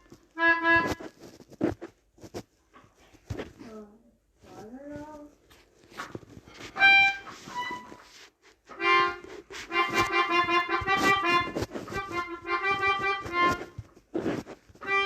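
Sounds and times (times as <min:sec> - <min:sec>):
melodica melody: 0:00.0 - 0:01.8, 0:06.6 - 0:15.0.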